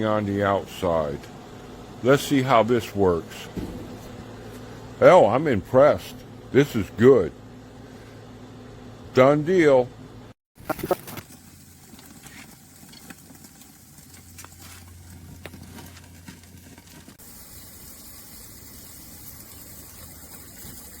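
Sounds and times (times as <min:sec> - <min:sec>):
patties sizzling on grill: 0:10.9 - 0:21.0.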